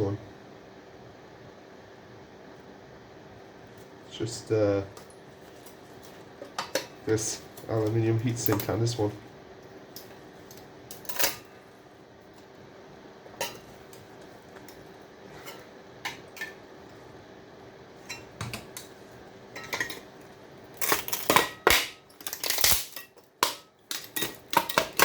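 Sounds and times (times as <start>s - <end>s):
metal heatsink clattering: 5.0s - 9.2s, 9.9s - 11.6s, 13.3s - 17.0s, 18.0s - 25.0s.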